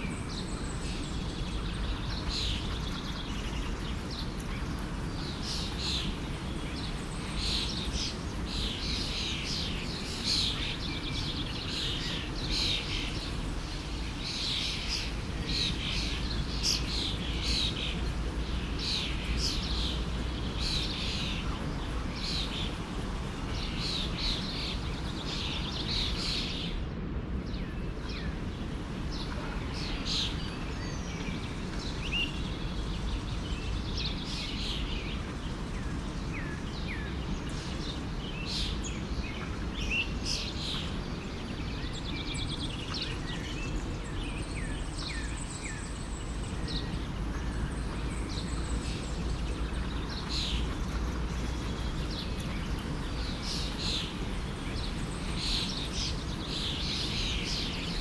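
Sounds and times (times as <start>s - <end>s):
small birds chirping: 0.0s - 26.8s, 27.5s - 58.0s
stream running: 27.8s - 43.4s.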